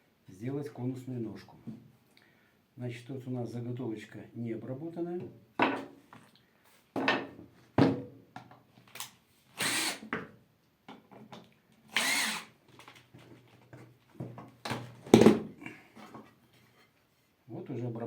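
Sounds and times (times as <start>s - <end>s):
wooden knocks and clatter: 13.2s - 15.5s.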